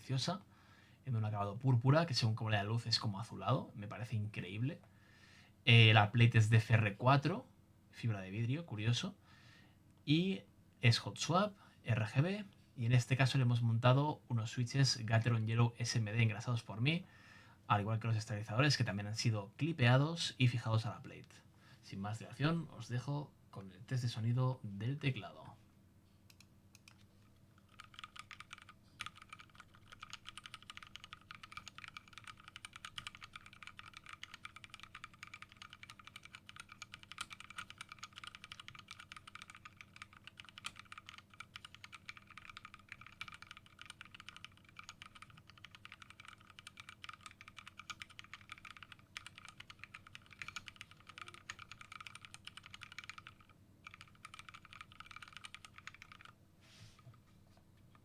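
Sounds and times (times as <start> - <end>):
fast typing on mechanical keyboard: 26.8 - 56.4.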